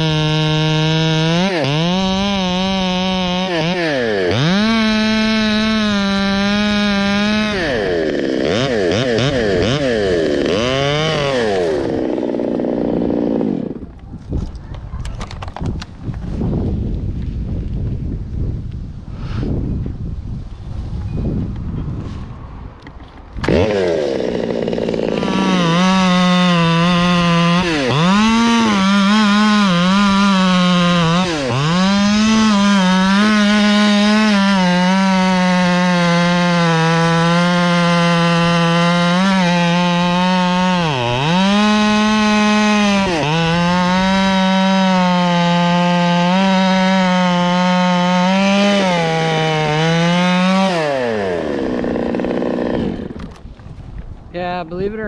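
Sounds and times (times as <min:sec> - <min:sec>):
chainsaw cutting wood: 0:00.0 - 0:14.4, 0:22.8 - 0:53.6.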